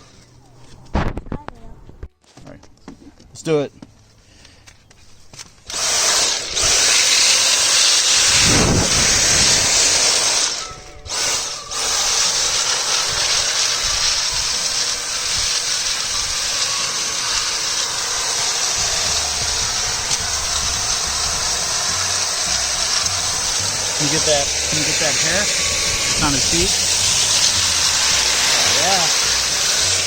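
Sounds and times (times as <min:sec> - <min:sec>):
handheld vacuum hissing: 0:05.6 - 0:30.0.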